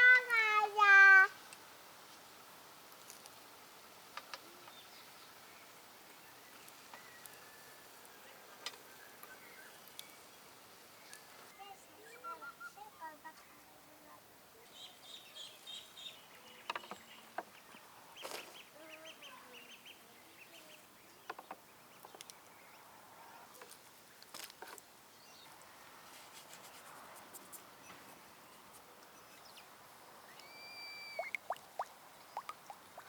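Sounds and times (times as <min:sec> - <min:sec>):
faint bird chirps: 0:11.0 - 0:13.6, 0:27.8 - 0:31.5.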